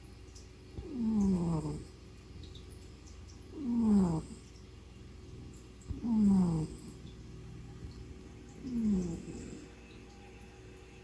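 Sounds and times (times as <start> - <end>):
cat snoring: 0.8 - 2.0, 3.5 - 4.6, 5.9 - 7.1, 8.6 - 10.0.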